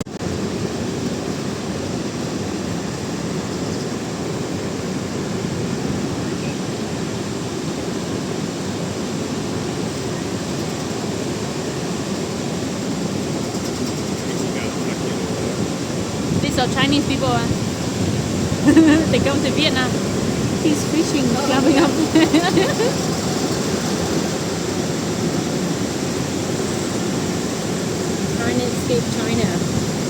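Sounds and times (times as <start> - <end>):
waterfall rushing: 14.2 - 30.0.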